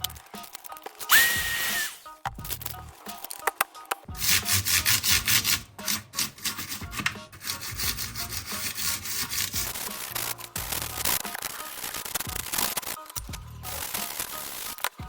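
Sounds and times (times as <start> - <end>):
scrubbing on keyboard: 4.2 - 13.0.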